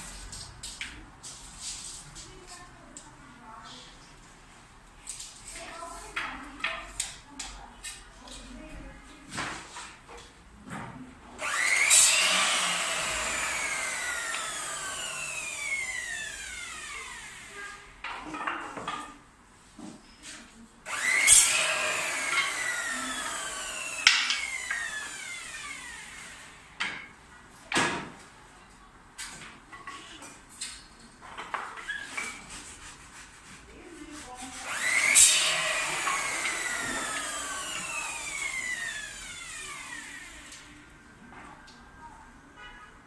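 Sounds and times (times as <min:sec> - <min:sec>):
power tool winding down whine: 0:11.4 - 0:17.8, 0:20.9 - 0:26.7, 0:34.6 - 0:40.7.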